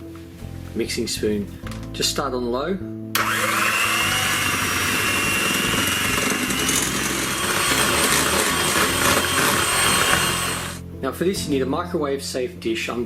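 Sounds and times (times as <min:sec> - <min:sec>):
electric mixer motor running: 0:03.2 - 0:10.8
thin high motor whine: 0:03.2 - 0:10.8.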